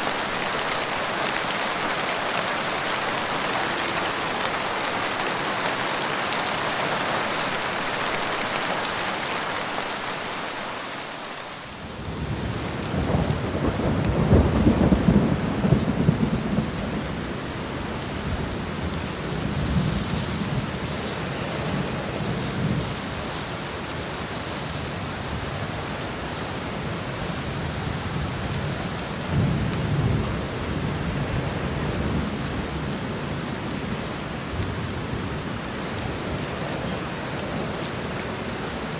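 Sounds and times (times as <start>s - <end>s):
steady rain: 0.0s - 38.9s
rolling thunder: 12.0s - 17.3s.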